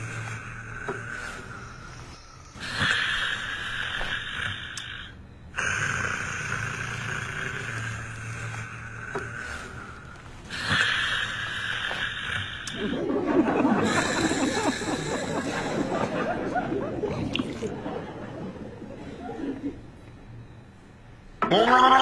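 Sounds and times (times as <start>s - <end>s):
person snoring: 0.0s - 16.2s
low buzzing drone: 0.0s - 22.0s.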